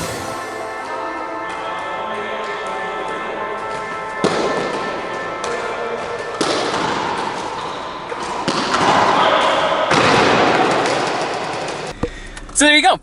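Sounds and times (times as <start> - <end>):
background music: 0.0 - 8.1.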